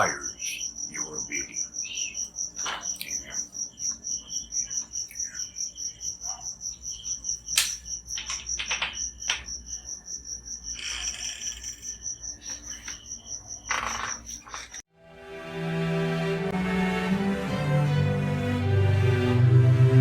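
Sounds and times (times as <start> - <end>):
crickets chirping: 0.0 - 14.8
music: 14.9 - 20.0.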